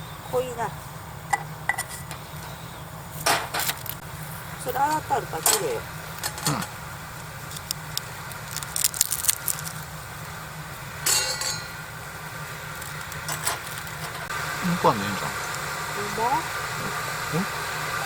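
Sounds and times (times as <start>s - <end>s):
steady low hum: 0.0s - 18.0s
sharp ringing clink: 11.0s - 11.8s
tableware clinking: 11.0s - 11.8s.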